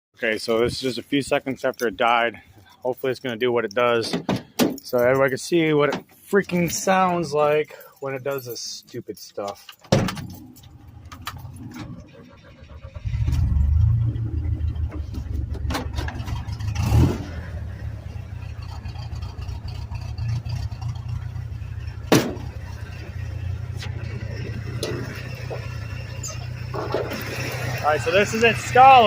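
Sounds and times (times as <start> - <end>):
car engine starting and idling: 9.9 - 29.0.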